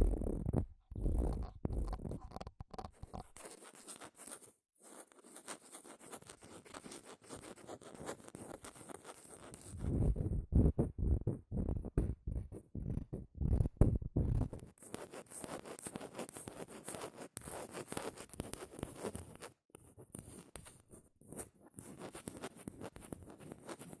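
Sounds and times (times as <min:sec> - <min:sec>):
close scratchy scraping: 0:01.0 - 0:11.2.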